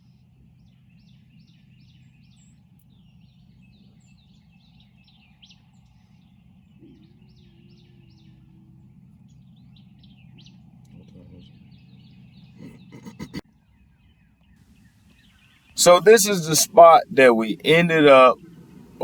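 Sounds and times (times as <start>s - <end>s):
songbirds chirping and singing: 0.6s - 19.0s
faint steady hum: 14.8s - 19.0s
low outdoor rumble: 15.8s - 19.0s.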